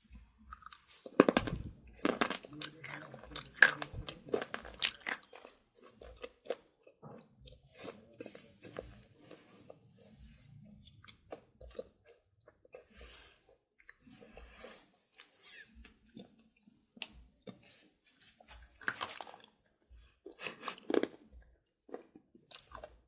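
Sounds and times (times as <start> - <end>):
pencil being chewed crunching: 0.5 - 9.8.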